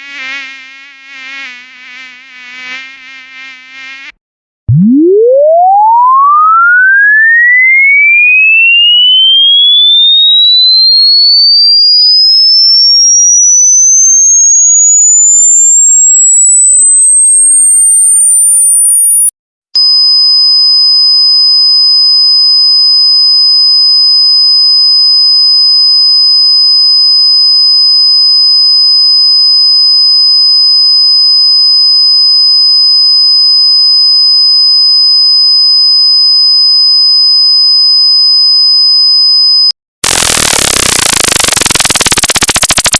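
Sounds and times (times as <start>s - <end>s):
fainter lower tone: 4.7s - 5.9s
electronic sine tone sweeping upward: 4.7s - 19.3s, 38.0s - 42.9s
shrill steady test tone: 4.7s - 42.9s.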